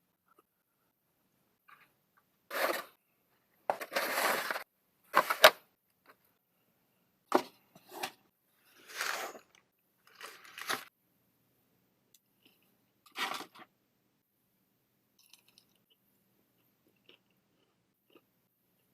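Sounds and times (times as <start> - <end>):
food packaging rustling: 2.5 - 3.0, 3.7 - 4.6, 5.2 - 5.6, 8.7 - 10.9.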